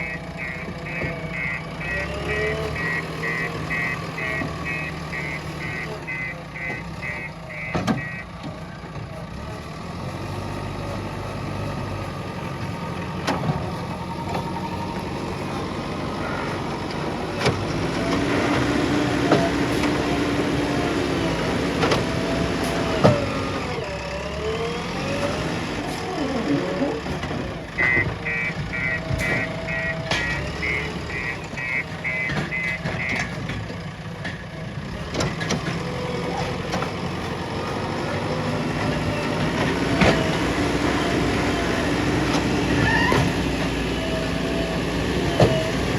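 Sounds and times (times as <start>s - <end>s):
reversing alarm beeping: 0.0s - 8.4s, 27.6s - 33.4s
diesel engine running: 0.0s - 45.9s.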